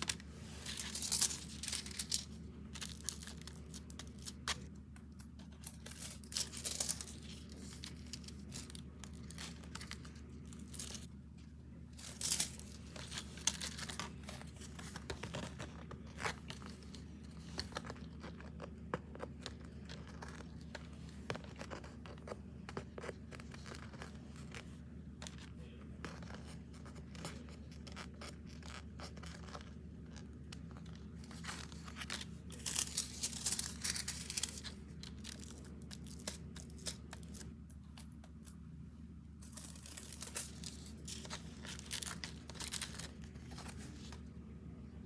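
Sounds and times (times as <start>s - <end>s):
tearing rustling: 0.0s - 4.6s, 31.0s - 37.6s, 39.4s - 44.1s
clicks scrapes and rustles: 0.0s - 11.1s, 12.0s - 38.7s
low electrical hum: 0.0s - 45.0s.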